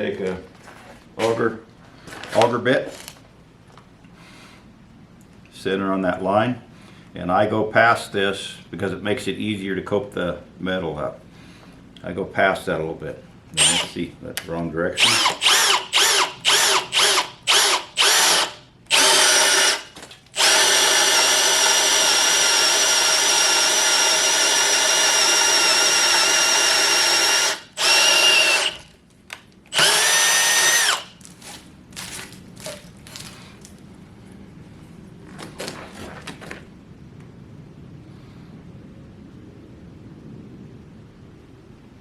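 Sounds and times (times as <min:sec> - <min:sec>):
power drill boring into wood: 0:13.6 - 0:13.9, 0:15.0 - 0:28.9, 0:29.7 - 0:31.2.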